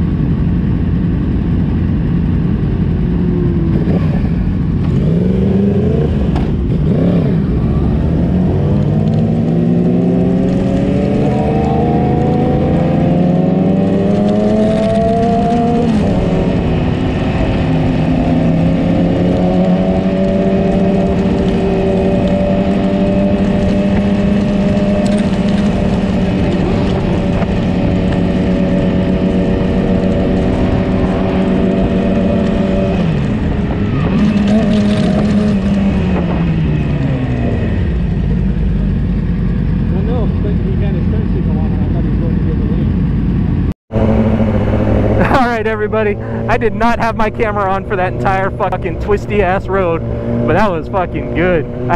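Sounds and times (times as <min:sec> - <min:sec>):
motorcycle engine revving: 0:00.0 - 0:51.9.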